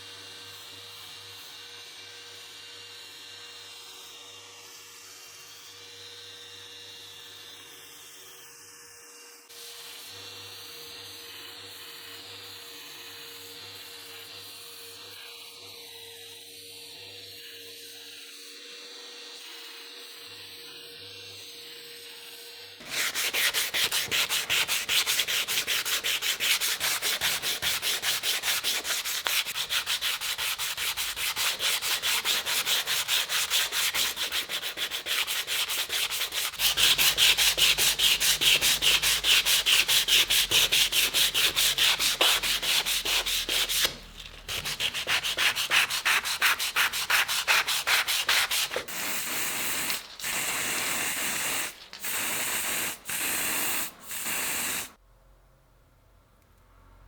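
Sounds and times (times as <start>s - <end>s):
abrasive rubbing against cleaver: 22.8s - 50.4s.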